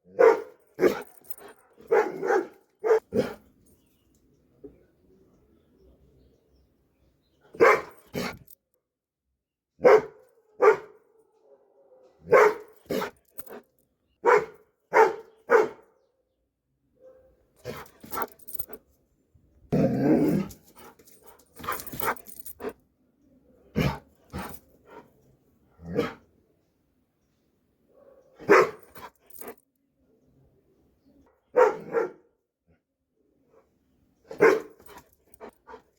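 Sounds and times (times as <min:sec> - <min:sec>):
dog barking: 0:00.1 - 0:01.1, 0:01.7 - 0:03.4, 0:07.5 - 0:08.4, 0:09.8 - 0:13.2, 0:14.2 - 0:15.9, 0:17.0 - 0:18.3, 0:25.9 - 0:26.2, 0:27.9 - 0:29.6, 0:31.5 - 0:32.3, 0:34.3 - 0:35.0
dog growling: 0:19.7 - 0:20.6.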